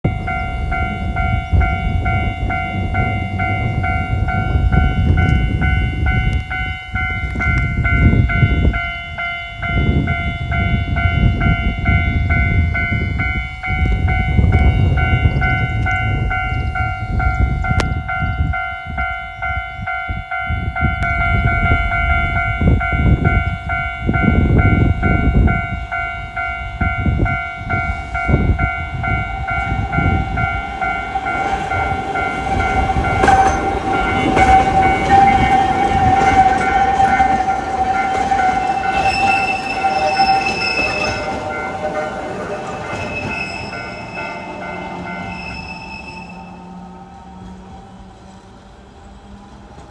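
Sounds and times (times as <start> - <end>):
high-pitched ringing tone: 0.1 - 47.2
train running with low rumble: 0.1 - 49.9.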